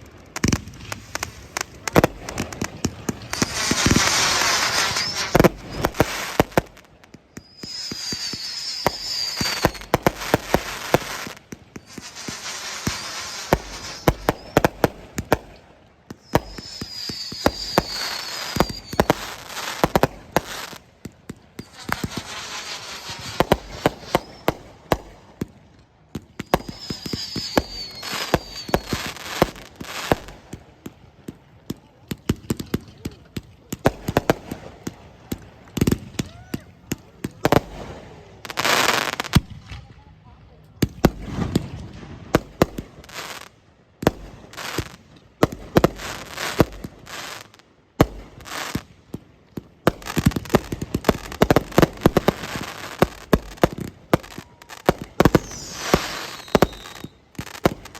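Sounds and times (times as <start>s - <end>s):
fireworks bangs and crackling: 0.0s - 57.9s.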